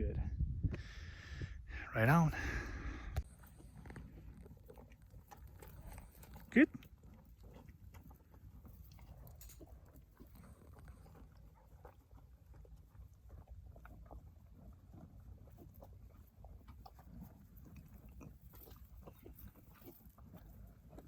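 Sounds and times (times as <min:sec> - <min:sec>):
low rumble: 0:00.0 - 0:03.2
faint clicks and crackles: 0:03.2 - 0:21.0.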